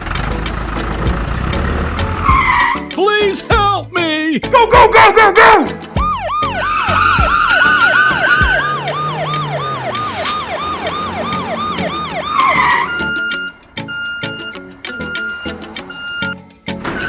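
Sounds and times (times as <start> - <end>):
background music with a beat: 0.0 - 16.9
cartoon police siren: 6.0 - 14.4.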